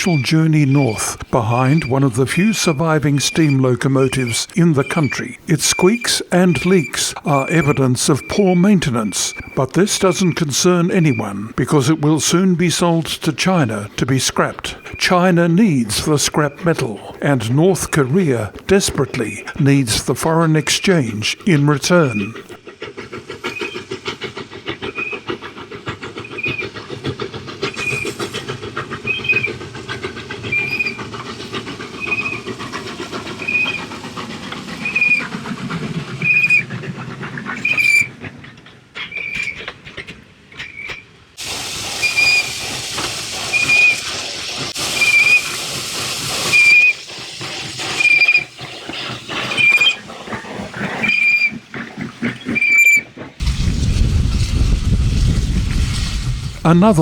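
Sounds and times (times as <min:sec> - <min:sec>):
hiss of leaking steam: 0:00.0 - 0:36.9, 0:41.4 - 0:51.6, 0:52.5 - 0:57.0
steam locomotive rumble and clicks: 0:00.0 - 0:57.0
short high squeak: 0:33.4 - 0:33.8, 0:36.2 - 0:36.6, 0:37.6 - 0:38.1, 0:46.5 - 0:47.0, 0:48.0 - 0:48.5, 0:49.5 - 0:50.0, 0:51.0 - 0:51.6, 0:52.4 - 0:53.6.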